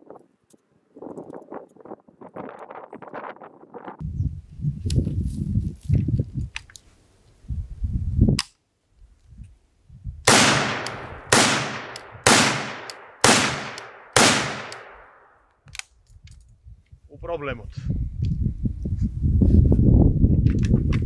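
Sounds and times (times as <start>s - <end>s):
rifle shots with echo: 10.3s - 15.3s.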